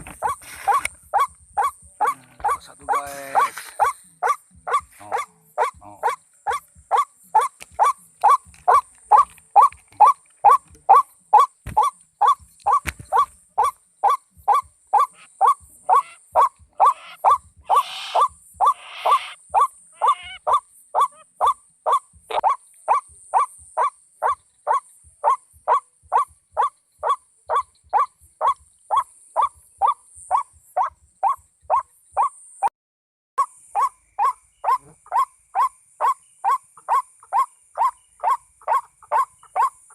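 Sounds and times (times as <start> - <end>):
waterhen call repeated: 0.2 - 13.7, 14.5 - 21.6.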